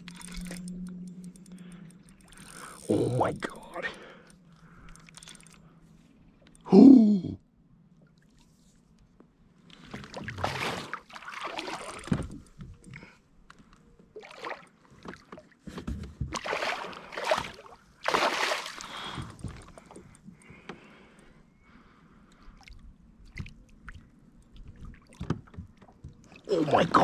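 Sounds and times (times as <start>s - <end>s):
water splashing against kayak: 9.8s - 12.5s, 16.2s - 20.0s.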